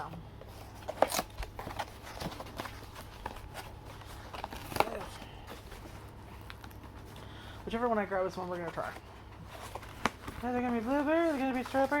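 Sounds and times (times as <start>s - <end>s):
packaging rustling and clicking: 0.4s - 7.2s.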